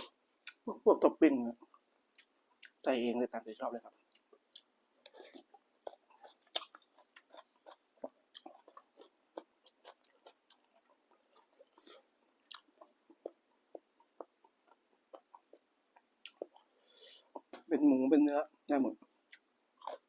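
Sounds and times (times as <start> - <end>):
person chewing: 0.0 - 0.6, 1.6 - 2.8, 3.9 - 17.7, 19.2 - 20.0
mouth clicks and smacks: 0.0 - 0.7, 3.9 - 17.7.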